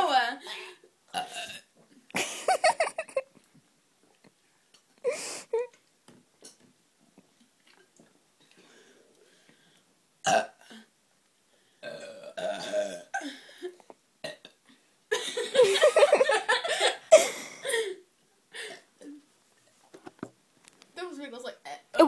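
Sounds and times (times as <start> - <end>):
girls burping: 11.9 - 13.3.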